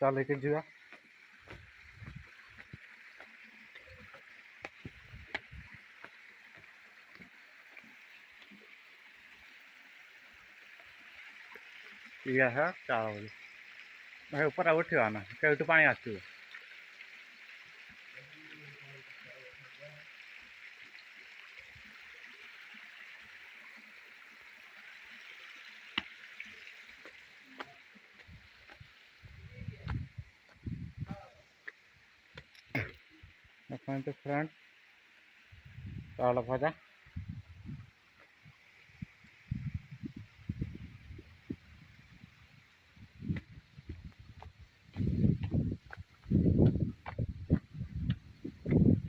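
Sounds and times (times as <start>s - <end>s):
footsteps: 0.9s - 7.9s, 43.3s - 48.9s.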